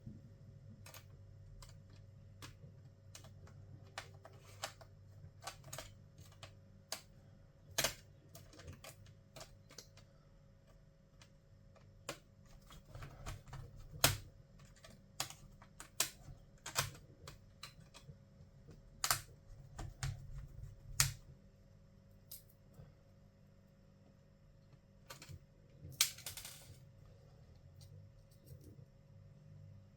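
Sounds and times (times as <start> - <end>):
faint low hum: 0.0 - 29.9.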